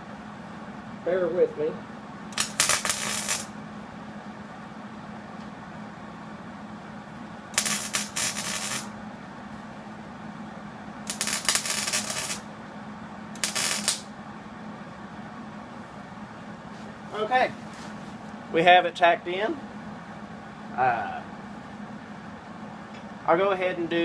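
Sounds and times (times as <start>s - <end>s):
steady low hum: 0.0s - 24.0s
welder crackling and sizzling: 2.3s - 3.6s, 7.5s - 9.0s, 11.0s - 12.5s, 13.3s - 14.1s.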